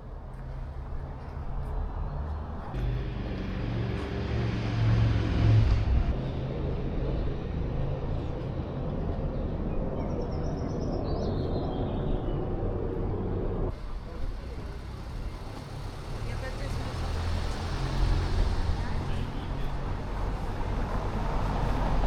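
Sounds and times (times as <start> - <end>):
street noise: 0.0 - 22.0
vehicle engine running: 2.3 - 8.5.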